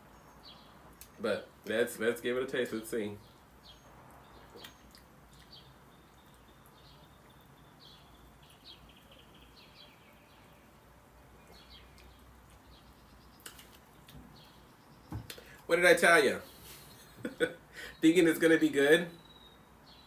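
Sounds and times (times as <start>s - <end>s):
faint high chirps: 19.0s - 20.0s.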